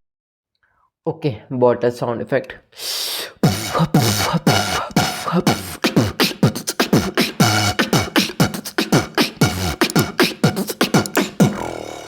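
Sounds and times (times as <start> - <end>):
beatboxing clicks and pops: 3.4 - 11.8.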